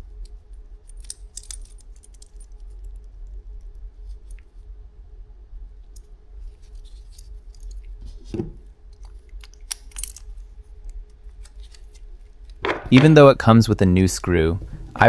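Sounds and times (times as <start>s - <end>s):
small parts clicking and clinking: 0.2s - 4.5s, 5.9s - 13.2s
dull knock: 12.6s - 13.2s.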